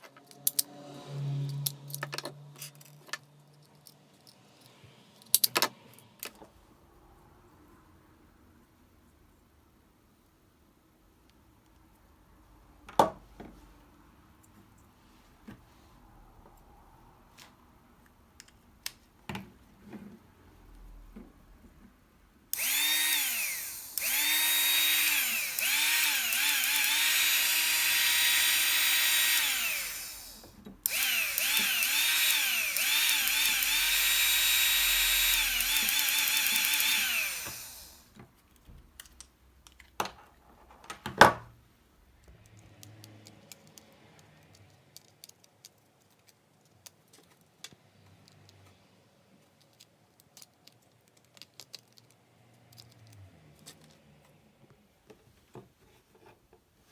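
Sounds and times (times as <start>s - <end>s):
cordless power tool motor: 22.5s - 38.2s.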